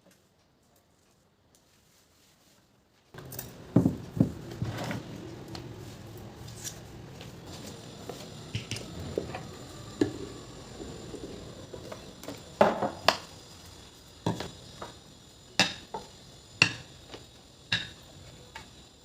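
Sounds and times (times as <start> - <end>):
steady background noise: 2.9 - 19.0
household objects knocking and clicking: 17.7 - 18.0.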